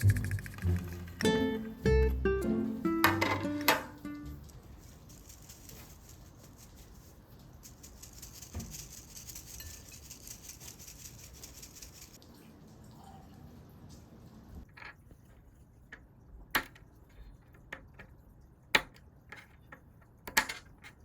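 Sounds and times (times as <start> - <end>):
dried fish pattering in a sieve: 4.2 - 12.2.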